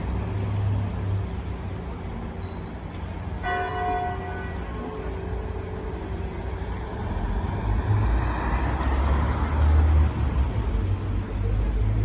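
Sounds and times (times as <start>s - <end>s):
vehicle passing: 6.9s - 11.7s.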